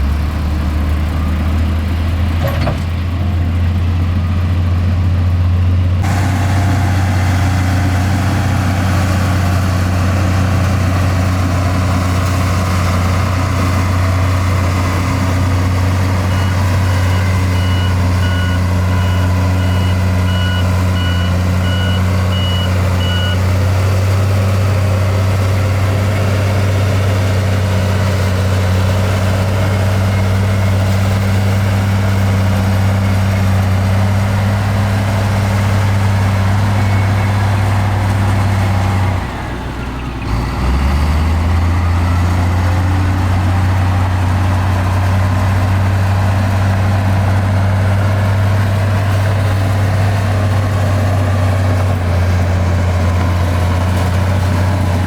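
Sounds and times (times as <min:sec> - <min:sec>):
heavy diesel engine humming: 0:00.0 - 0:55.0
reversing alarm beeping: 0:15.6 - 0:23.5.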